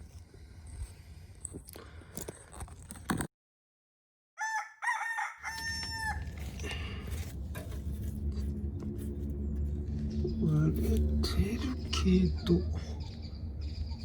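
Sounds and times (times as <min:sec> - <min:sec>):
rooster crowing: 0:04.4 - 0:06.4
low steady rumble: 0:05.8 - 0:14.0.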